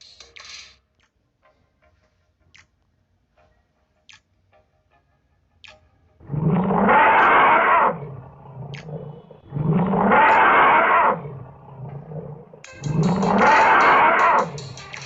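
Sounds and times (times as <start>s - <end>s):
big cat roaring: 6.2s - 14.6s.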